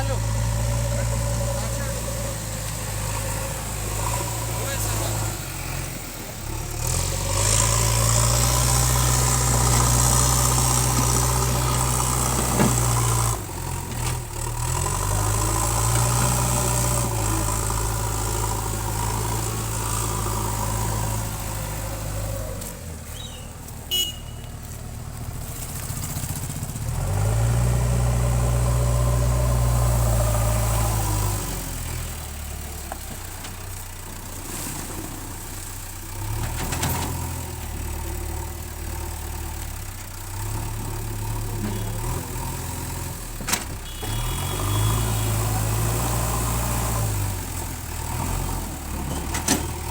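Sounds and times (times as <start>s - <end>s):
diesel engine revving: 0.0s - 49.9s
brief sharp squeak: 23.1s - 24.4s.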